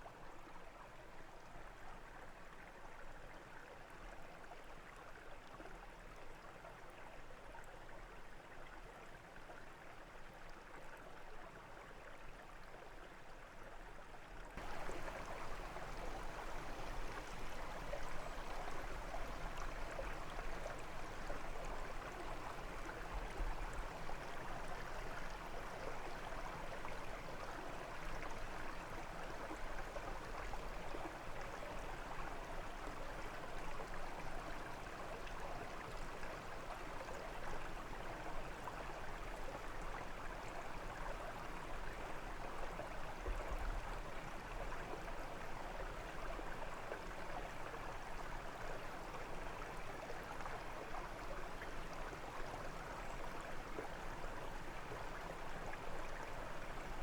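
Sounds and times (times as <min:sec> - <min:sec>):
brook babbling over stones: 0:14.6 - 0:57.0.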